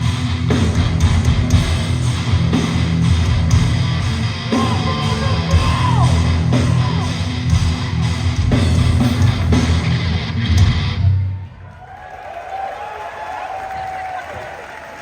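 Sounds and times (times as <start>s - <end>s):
distorted electric guitars: 0.0s - 11.5s
bass and drums: 0.0s - 11.6s.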